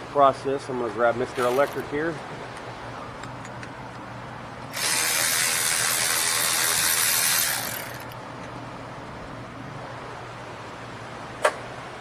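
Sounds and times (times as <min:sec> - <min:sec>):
cordless electric wrench spinning: 0:01.4 - 0:01.8, 0:04.7 - 0:08.2.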